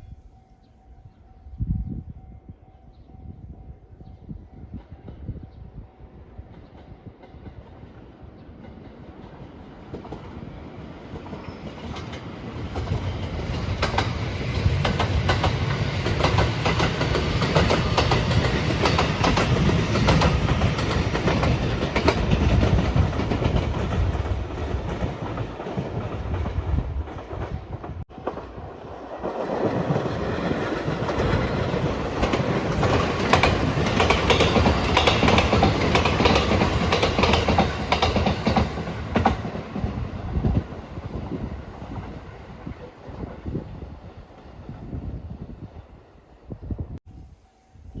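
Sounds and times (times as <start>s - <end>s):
train wheels clattering over rails: 6.5s - 40.8s.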